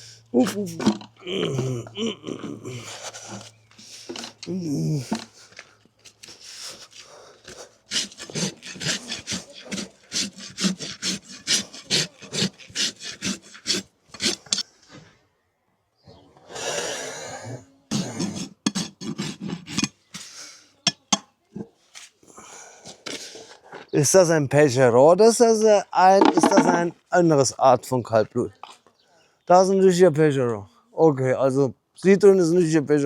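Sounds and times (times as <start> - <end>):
rasp filing a hoof: 6.2 - 14.7, 17.9 - 20.4.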